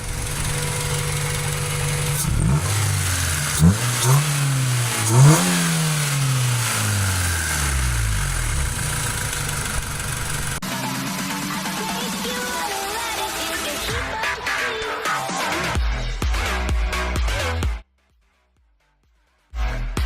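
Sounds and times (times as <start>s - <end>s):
car engine idling and revving: 0.0s - 14.6s.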